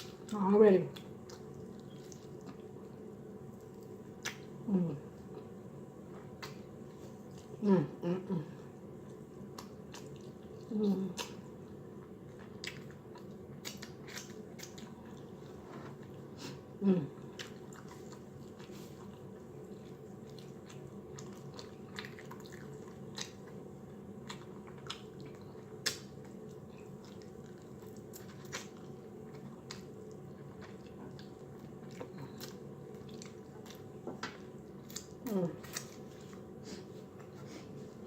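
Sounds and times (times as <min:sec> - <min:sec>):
person chewing and lip-smacking: 0:00.0 - 0:02.8, 0:03.5 - 0:04.6, 0:09.5 - 0:15.4, 0:17.2 - 0:23.6, 0:24.2 - 0:37.4
steady low hum: 0:00.0 - 0:38.0.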